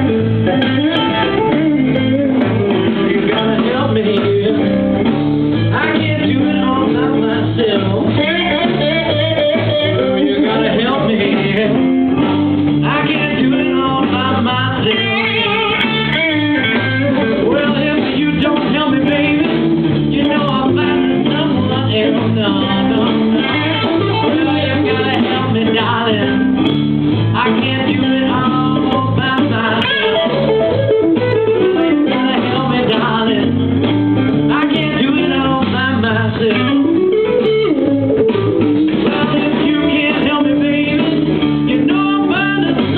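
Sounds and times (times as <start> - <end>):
electric guitar: 0.0 - 42.9
live blues band: 0.0 - 42.9.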